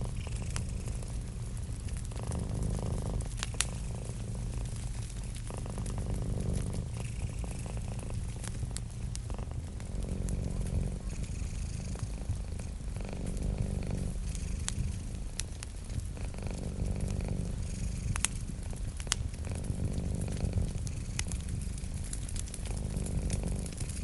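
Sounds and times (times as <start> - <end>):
cat purring: 0.0 - 24.0
wood fire crackling: 0.0 - 24.0.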